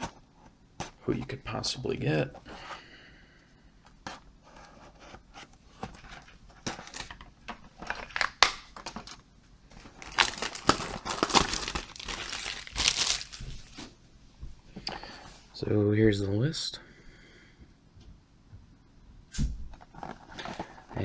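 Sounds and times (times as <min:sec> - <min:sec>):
plastic wrapping crinkling and tearing: 0:06.2 - 0:14.0.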